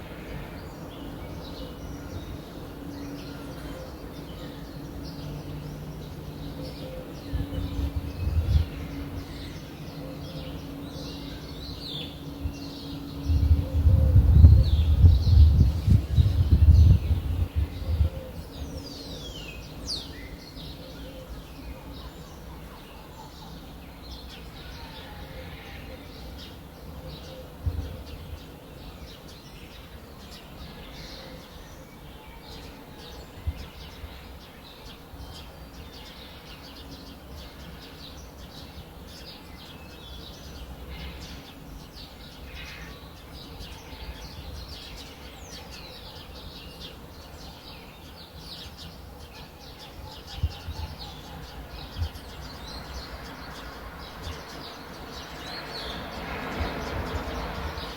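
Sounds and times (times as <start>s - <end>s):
small birds chirping: 0.0s - 57.9s
steady low rumble: 13.2s - 18.2s.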